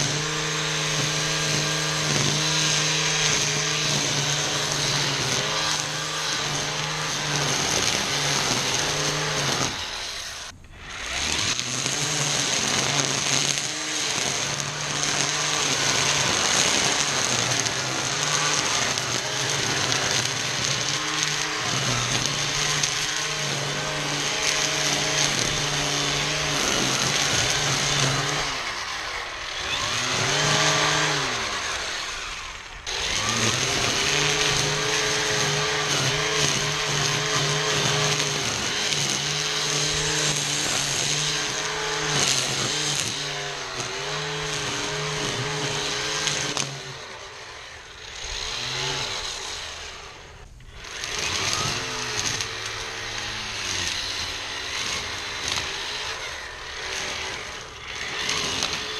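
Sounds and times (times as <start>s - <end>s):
string trimmer cutting weeds: 0.0s - 58.9s.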